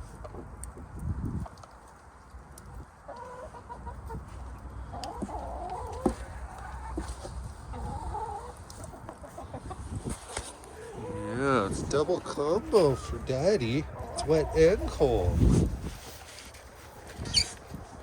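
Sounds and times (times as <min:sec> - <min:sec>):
hens clucking: 0:02.6 - 0:15.7
drawn-out hen calls: 0:02.7 - 0:15.7.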